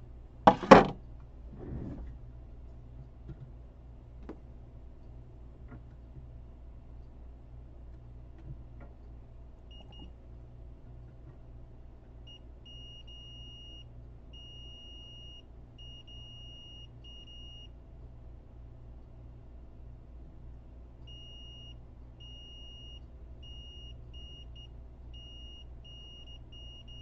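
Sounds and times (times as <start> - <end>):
steady low hum: 0.0 - 27.0
multimeter continuity beeps: 9.7 - 10.2, 12.3 - 17.8, 21.1 - 27.0.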